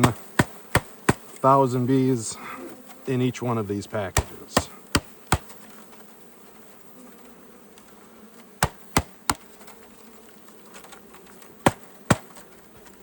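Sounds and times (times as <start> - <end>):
sharp knocks on wood: 0.0 - 1.3, 4.2 - 5.6, 8.6 - 9.5, 11.6 - 12.4
honeybees buzzing: 0.0 - 13.0.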